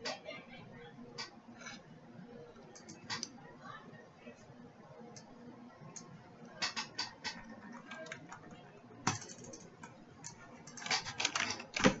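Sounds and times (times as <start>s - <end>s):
computer keyboard typing: 2.6s - 3.3s, 5.9s - 12.0s.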